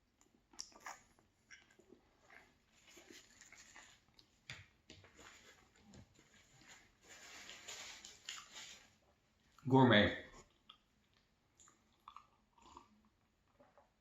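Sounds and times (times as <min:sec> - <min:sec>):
quiet chewing: 0:00.0 - 0:04.7, 0:10.3 - 0:14.0
mouth clicks and smacks: 0:00.2 - 0:02.4, 0:10.3 - 0:14.0.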